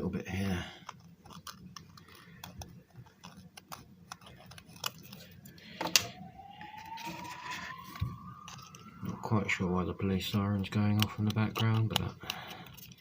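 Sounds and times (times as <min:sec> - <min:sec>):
police siren: 0:05.6 - 0:10.9
plastic pieces clicking together: 0:10.8 - 0:13.0.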